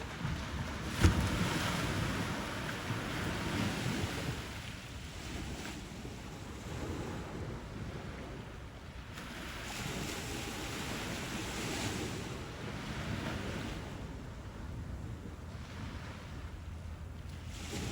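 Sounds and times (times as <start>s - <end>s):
sea waves washing onto shore: 0.0s - 17.9s.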